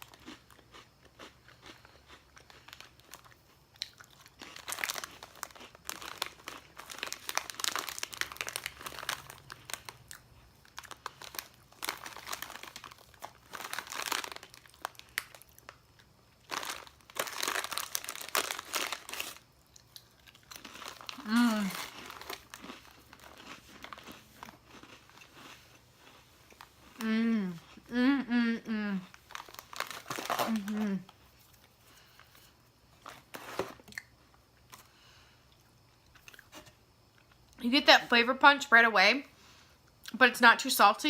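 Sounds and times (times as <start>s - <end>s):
crackers being chewed: 0.0s - 27.9s, 29.0s - 37.6s
plastic packaging crinkling: 2.5s - 3.3s, 4.4s - 15.8s, 16.4s - 19.5s, 20.3s - 25.5s, 29.1s - 33.9s.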